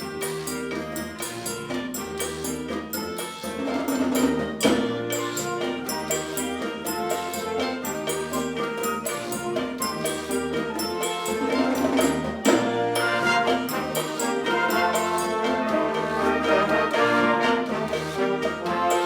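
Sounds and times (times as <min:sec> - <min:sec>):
percussion strikes: 0:00.0 - 0:19.0
brass playing held chords: 0:05.4 - 0:19.0.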